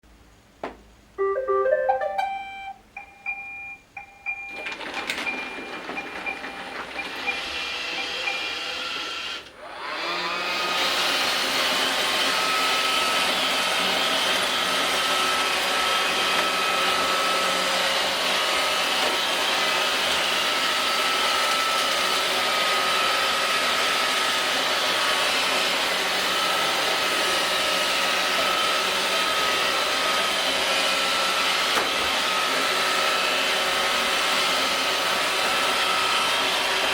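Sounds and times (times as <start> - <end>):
short electronic tones: 1.2 - 2.8.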